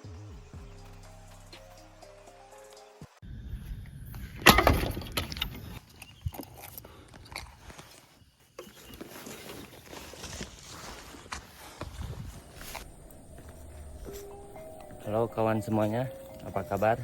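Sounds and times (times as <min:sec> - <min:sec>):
twigs snapping and rustling: 0:05.1 - 0:14.8.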